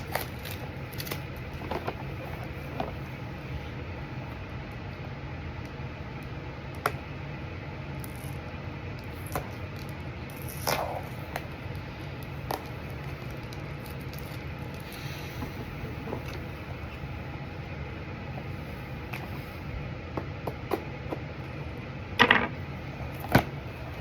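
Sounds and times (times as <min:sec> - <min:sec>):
packing tape and cardboard crinkling: 0:00.0 - 0:03.2, 0:08.0 - 0:16.9
steady low hum: 0:00.0 - 0:24.0.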